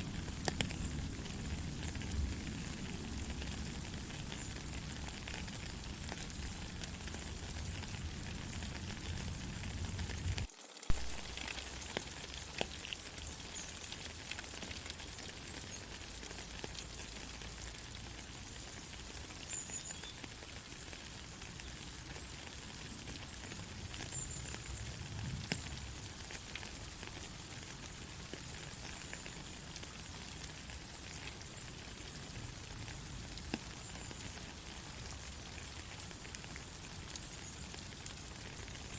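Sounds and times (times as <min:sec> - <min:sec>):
steady rain falling: 0:00.0 - 0:38.9.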